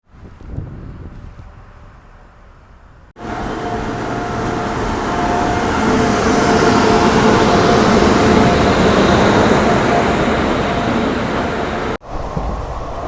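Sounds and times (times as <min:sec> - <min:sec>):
wind: 0:00.0 - 0:13.0
train wheel and rail noise: 0:00.1 - 0:13.0.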